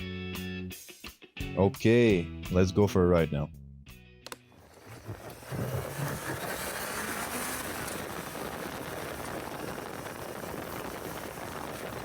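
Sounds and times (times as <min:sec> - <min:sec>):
motorcycle engine running: 0:04.7 - 0:12.0
wind rush over microphone: 0:04.9 - 0:12.0.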